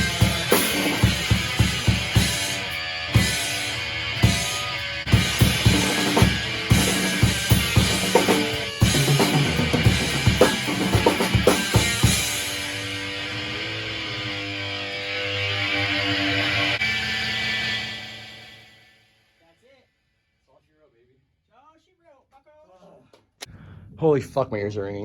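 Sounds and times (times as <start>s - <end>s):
drum kit fills: 0.0s - 14.0s
guitar chords: 0.0s - 18.6s
rock band playing: 0.0s - 18.7s.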